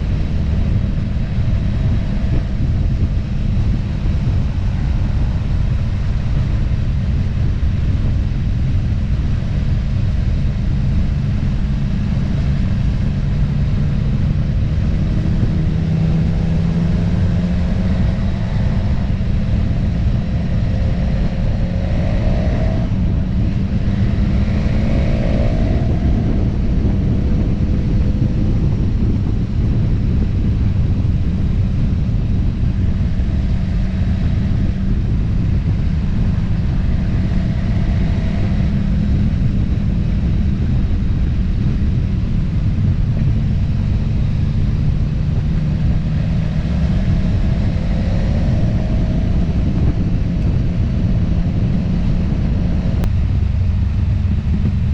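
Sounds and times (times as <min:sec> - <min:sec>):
road noise: 0:00.0 - 0:54.9
vehicle engine rumble: 0:00.0 - 0:54.9.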